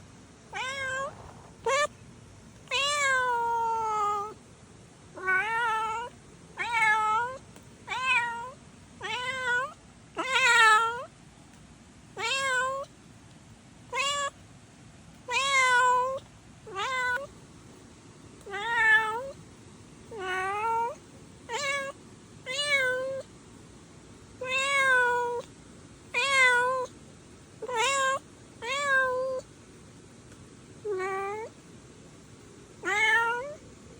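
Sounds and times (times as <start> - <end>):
kitten meowing: 0.5 - 1.9, 2.7 - 4.4, 5.2 - 11.1, 12.2 - 12.9, 13.9 - 14.4, 15.3 - 17.3, 18.4 - 19.4, 20.1 - 21.9, 22.5 - 23.2, 24.4 - 25.5, 26.2 - 26.9, 27.6 - 29.4, 30.9 - 31.5, 32.8 - 33.6.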